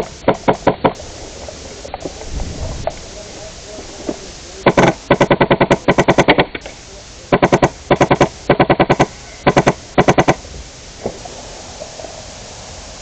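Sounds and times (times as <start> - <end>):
airsoft gun firing bursts: 0.0 - 1.0, 4.6 - 6.6, 7.3 - 10.4.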